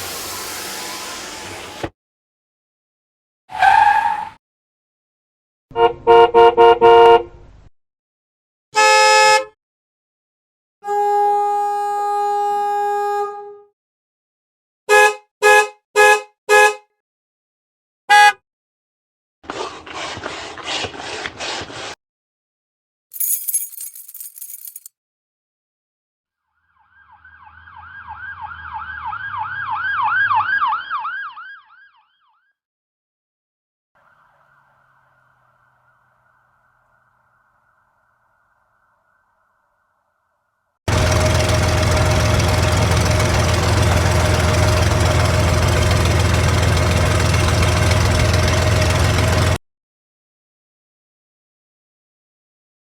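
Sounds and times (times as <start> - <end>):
vehicle horn blasts: 5.7 - 7.3, 8.8 - 9.5, 10.8 - 13.6, 14.9 - 16.9, 18.1 - 18.4
emergency vehicle siren yelping: 26.8 - 32.0
low engine rumble: 40.9 - 49.6.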